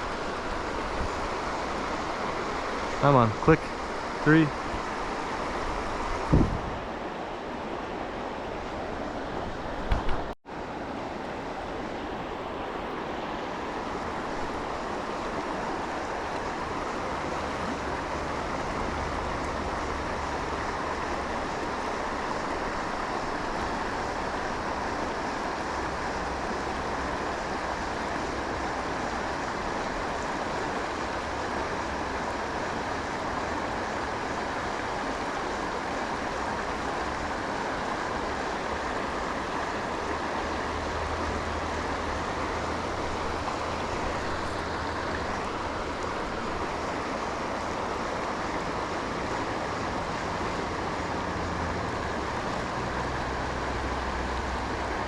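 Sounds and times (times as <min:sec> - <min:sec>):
river water rushing: 0:00.0 - 0:55.0
wind rumble on microphone: 0:04.8 - 0:07.1.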